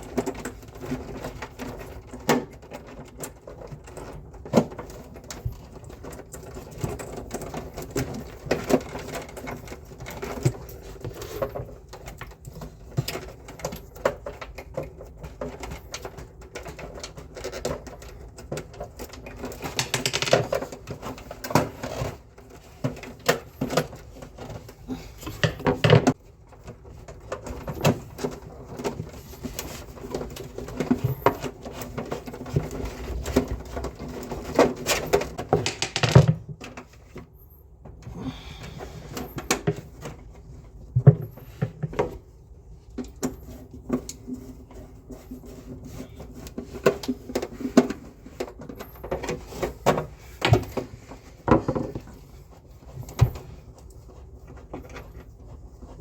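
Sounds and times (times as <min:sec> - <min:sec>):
tools knocking and clattering: 0:00.0 - 0:37.2.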